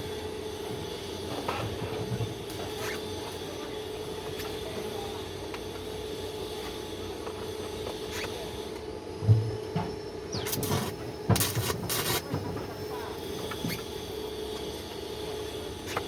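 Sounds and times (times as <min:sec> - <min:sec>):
machine hum: 0:09.2 - 0:15.8
harsh hissing bursts: 0:10.4 - 0:12.4.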